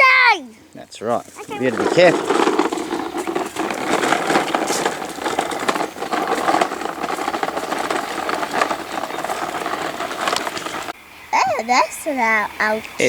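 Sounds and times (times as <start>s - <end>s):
dry leaves and twigs crackling: 1.1s - 11.0s.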